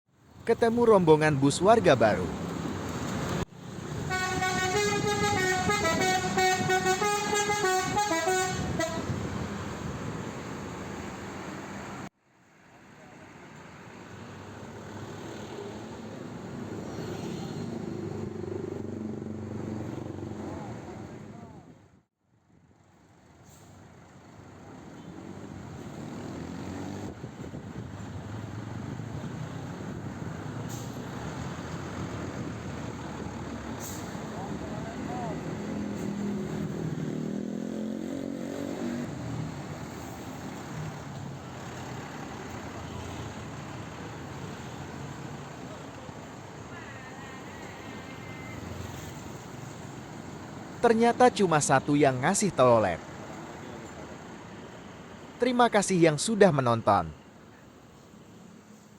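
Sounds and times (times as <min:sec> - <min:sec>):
road noise: 0:00.1 - 0:58.9
bus engine drone passing by: 0:00.3 - 0:22.0, 0:22.6 - 0:52.0
bus diesel engine rumble: 0:04.0 - 0:11.5, 0:27.2 - 0:37.0.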